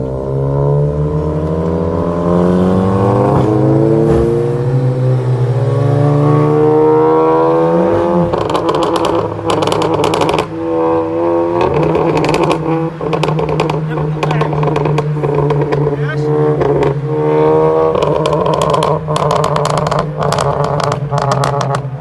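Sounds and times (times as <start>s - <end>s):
car engine revving: 0.0s - 22.0s
exhaust crackles and pops: 8.2s - 10.5s, 11.6s - 17.0s, 17.8s - 22.0s.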